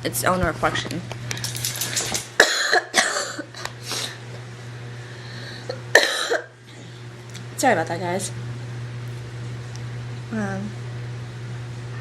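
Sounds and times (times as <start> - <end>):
woman coughing: 2.4 - 3.6, 5.7 - 6.6.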